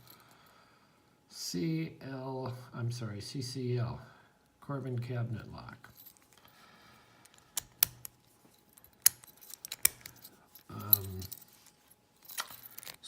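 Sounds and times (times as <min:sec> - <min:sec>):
small metal clicks and clinks: 0:07.2 - 0:11.6, 0:12.2 - 0:13.0.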